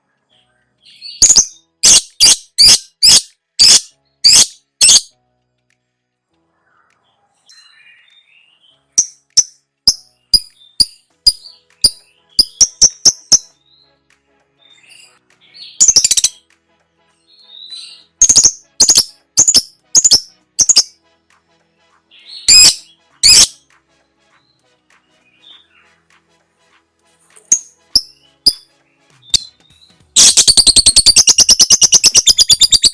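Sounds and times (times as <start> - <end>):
lovebird calling: 30.2 - 32.9.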